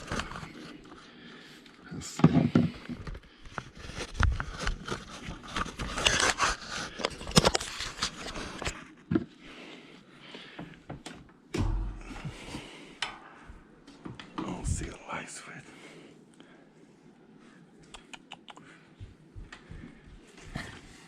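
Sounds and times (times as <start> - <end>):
rustling and scraping: 2.1 - 9.4.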